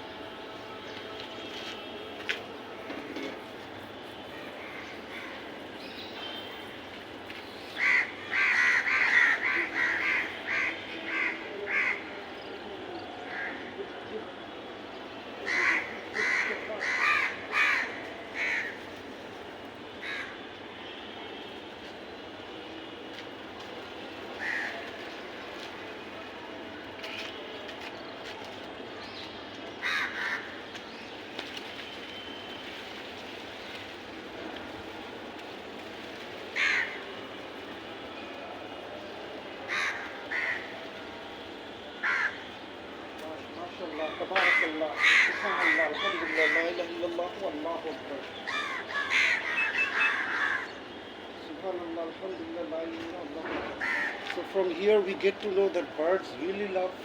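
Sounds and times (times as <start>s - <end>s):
crows cawing: 4.6s - 5.5s, 7.8s - 12.1s, 13.3s - 13.7s, 15.4s - 19.0s, 20.0s - 20.4s, 24.4s - 25.0s, 29.8s - 30.6s, 36.6s - 37.2s, 39.7s - 40.7s, 42.0s - 42.5s, 44.0s - 46.9s, 48.4s - 50.8s, 53.8s - 54.4s.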